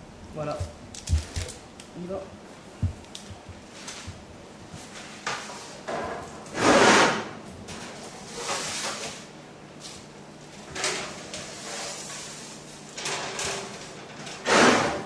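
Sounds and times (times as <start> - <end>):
baking tray scraping and clunking: 4.9 - 9.3, 10.7 - 15.0.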